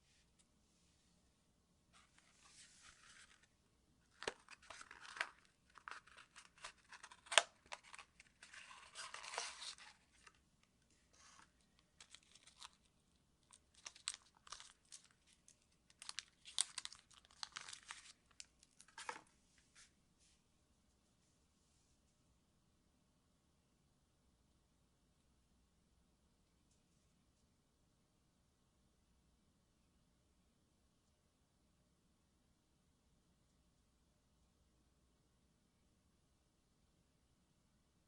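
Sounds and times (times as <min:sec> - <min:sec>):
package wrapping tearing: 0:04.1 - 0:10.4, 0:12.0 - 0:12.9, 0:13.5 - 0:19.2.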